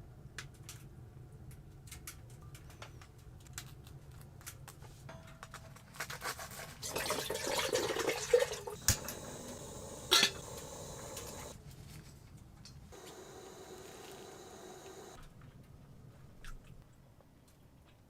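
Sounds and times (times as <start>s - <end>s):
cookware clinking and scraping: 10.0s - 10.6s.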